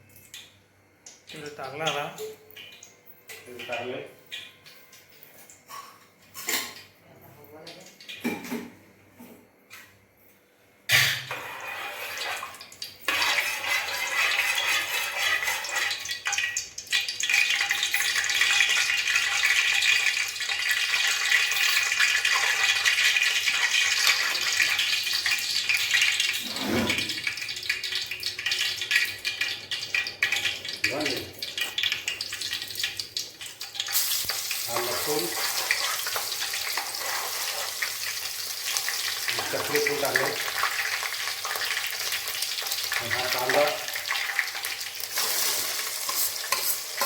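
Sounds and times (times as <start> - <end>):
hot oil sizzling in a pan: 11.2 - 47.0.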